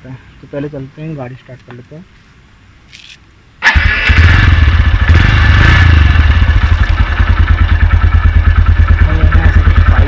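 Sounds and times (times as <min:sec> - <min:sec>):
motorcycle engine idling: 0:03.6 - 0:10.0.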